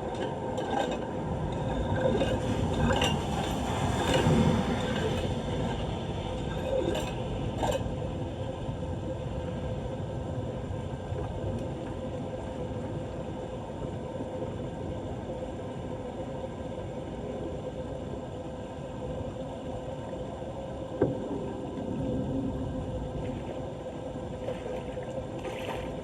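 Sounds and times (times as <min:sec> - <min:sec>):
floodwater flowing and sloshing: 0:00.0 - 0:09.9, 0:21.1 - 0:26.0
steady hum: 0:00.0 - 0:26.0.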